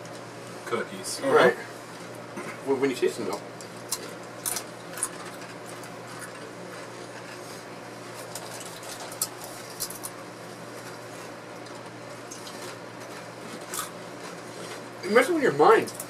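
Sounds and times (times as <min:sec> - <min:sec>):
steady low hum: 0:00.0 - 0:16.0
crackers chewing and crunching: 0:03.3 - 0:07.4, 0:08.1 - 0:16.0.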